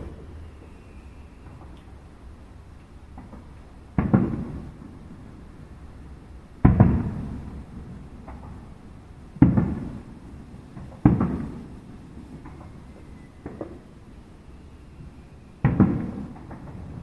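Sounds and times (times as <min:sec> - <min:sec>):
firework shells booming: 0:03.1 - 0:05.1, 0:06.6 - 0:08.8, 0:09.4 - 0:12.8, 0:15.6 - 0:17.0.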